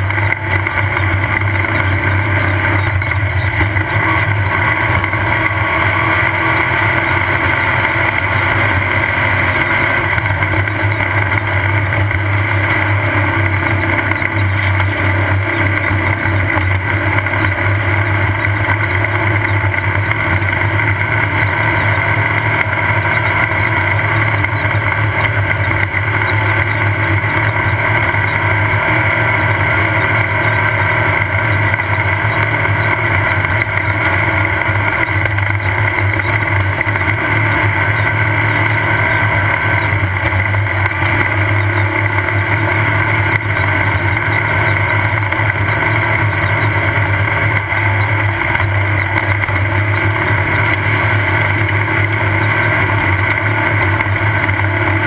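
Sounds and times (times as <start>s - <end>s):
race car engine running: 0.0s - 55.0s
road and wind noise: 0.0s - 55.0s.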